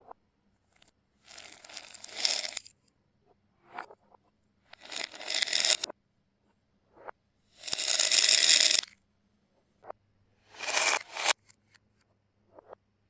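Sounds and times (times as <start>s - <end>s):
reversed objects rattling: 1.3s - 2.7s, 4.8s - 5.9s, 7.6s - 8.9s, 10.6s - 11.4s.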